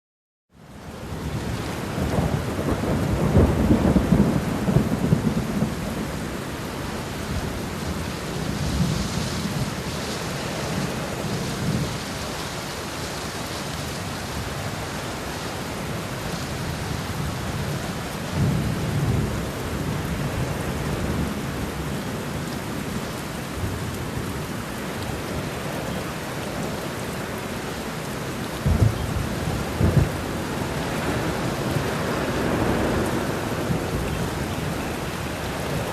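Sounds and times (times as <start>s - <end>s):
steady rain: 0.5s - 35.9s
thunder rumbling: 1.1s - 12.6s, 28.5s - 35.9s
sharp thunder claps: 28.6s - 30.2s.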